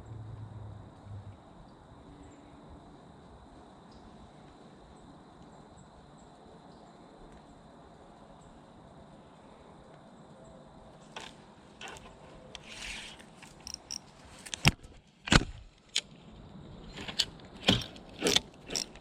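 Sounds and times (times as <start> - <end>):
brief rustle: 11.0 - 15.6
fishing reel clicks and knocks: 11.2 - 14.6, 17.6 - 19.0.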